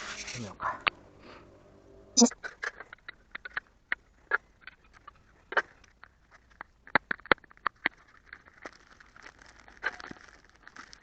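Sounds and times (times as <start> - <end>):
sharp irregular clicks and knocks: 2.4 - 8.8.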